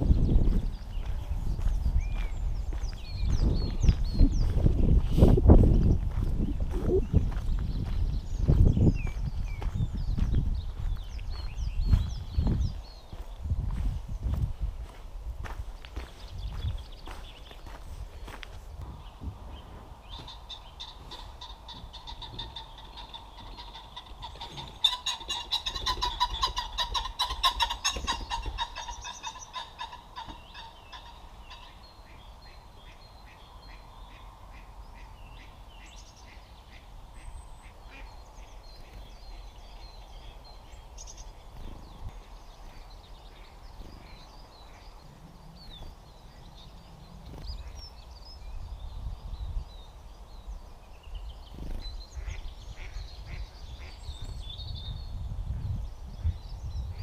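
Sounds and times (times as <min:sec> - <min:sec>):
bird chirps and birdsong: 0:00.0 - 0:57.0
rattling bird calls: 0:20.1 - 0:31.8.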